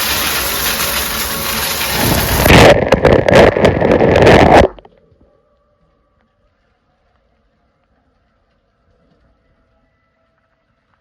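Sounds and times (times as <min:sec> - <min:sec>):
shower water spraying: 0:00.0 - 0:02.6.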